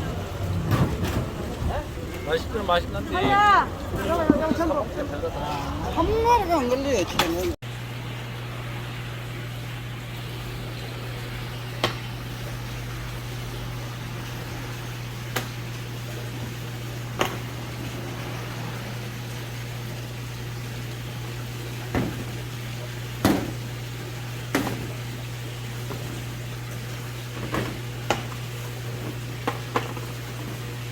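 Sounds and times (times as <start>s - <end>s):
low machine hum: 0.0s - 30.9s.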